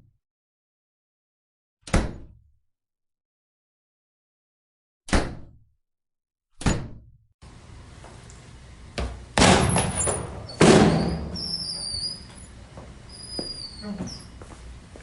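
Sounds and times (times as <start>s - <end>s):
door slamming: 9.4s - 12.3s.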